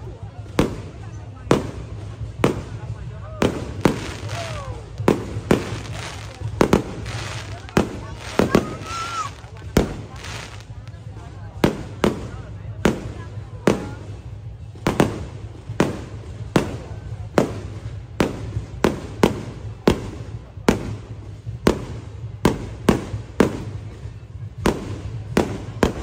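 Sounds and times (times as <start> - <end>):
fireworks bursting with sharp bangs: 0.0 - 26.0.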